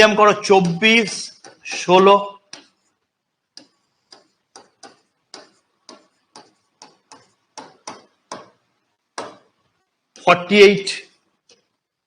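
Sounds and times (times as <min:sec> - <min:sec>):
pen tapping on a surface: 0:03.6 - 0:08.6.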